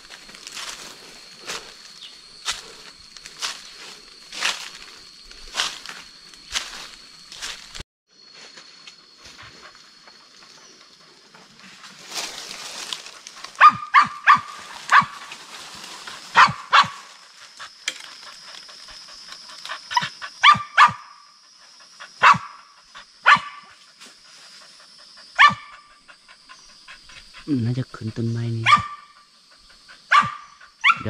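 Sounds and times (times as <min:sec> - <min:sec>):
dog barking: 0:13.6 - 0:15.2, 0:16.3 - 0:17.1, 0:19.9 - 0:21.2, 0:22.1 - 0:23.8, 0:25.4 - 0:25.9, 0:28.6 - 0:29.3, 0:29.9 - 0:31.0.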